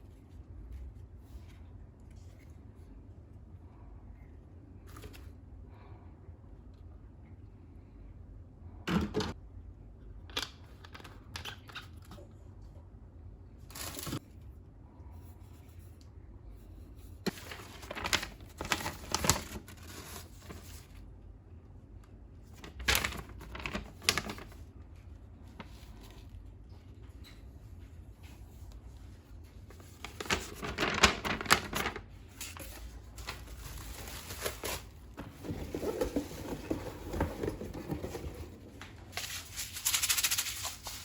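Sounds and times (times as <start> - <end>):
plastic packaging crinkling: 17.3 - 20.9, 22.5 - 24.7, 29.8 - 36.6.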